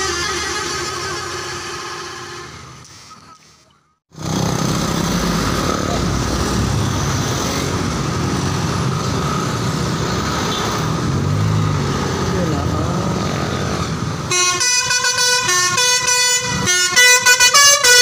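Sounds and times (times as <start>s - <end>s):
musical bus horn: 0.0s - 2.9s, 14.3s - 18.0s
bus engine rumble in traffic: 0.0s - 18.0s.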